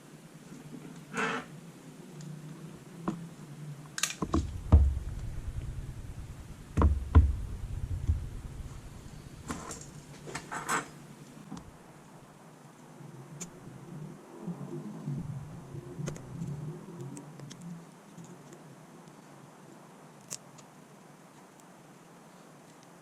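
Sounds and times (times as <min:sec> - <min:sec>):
dull bumps on work surface: 0:04.2 - 0:09.6.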